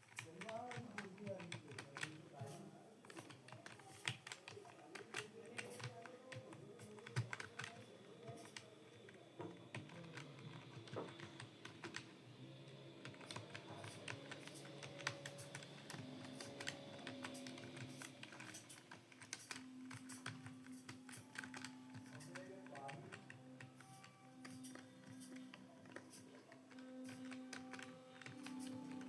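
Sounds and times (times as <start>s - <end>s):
keyboard typing: 0.0s - 29.0s.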